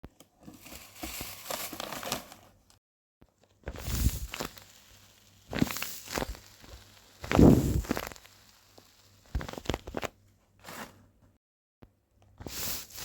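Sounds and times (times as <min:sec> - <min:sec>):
packaging crinkling and rustling: 0:00.4 - 0:02.8, 0:03.4 - 0:11.0.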